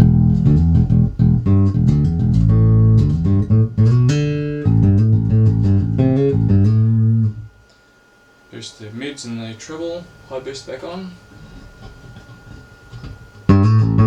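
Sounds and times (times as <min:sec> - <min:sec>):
electric bass plucked notes: 0:00.0 - 0:07.6, 0:13.5 - 0:14.0.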